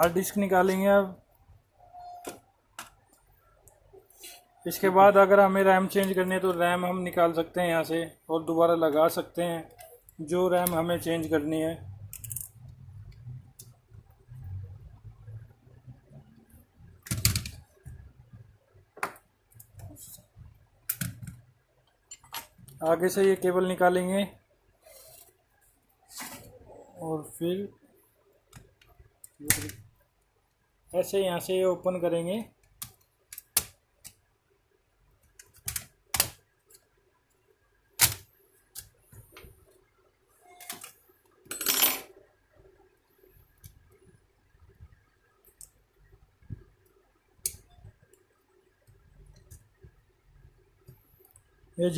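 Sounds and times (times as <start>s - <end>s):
plastic laptop parts clicking: 32.6s - 34.2s, 35.2s - 36.9s.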